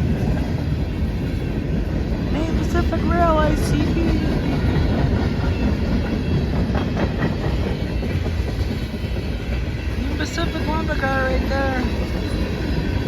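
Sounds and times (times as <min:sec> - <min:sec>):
freight train wheels clattering: 0:00.0 - 0:13.0
train low rumble: 0:00.0 - 0:13.0.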